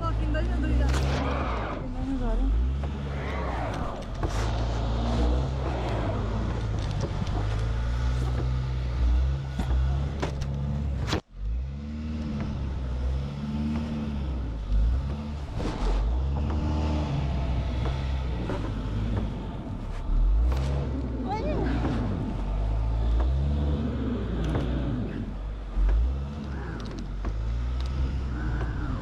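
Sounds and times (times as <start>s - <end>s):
car engine revving: 0.0s - 29.0s
wheels spinning in snow: 0.0s - 29.0s.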